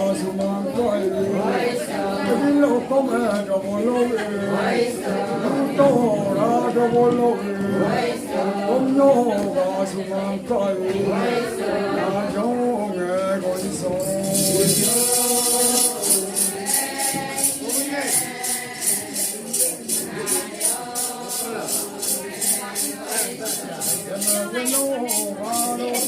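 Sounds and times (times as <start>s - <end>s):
group of voices singing: 0.0s - 26.0s
shaken metal jingle: 13.5s - 26.0s.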